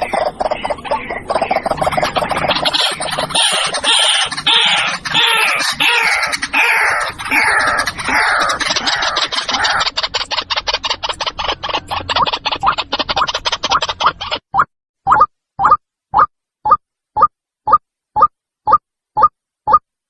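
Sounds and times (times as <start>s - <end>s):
waterhen calling: 0.0s - 9.9s.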